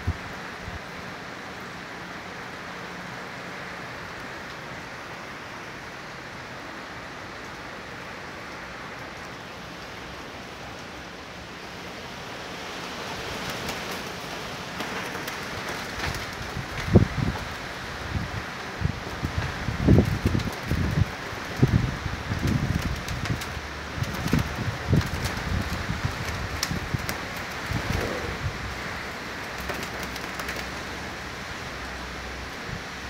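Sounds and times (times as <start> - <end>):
storm wind: 0.0 - 1.1, 11.4 - 33.0
heavy rain: 0.0 - 33.0.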